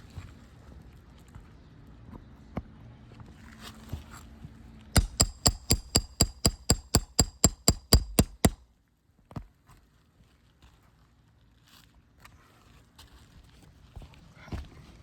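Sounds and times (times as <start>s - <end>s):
hammer tapping with metallic ring: 5.0s - 8.6s.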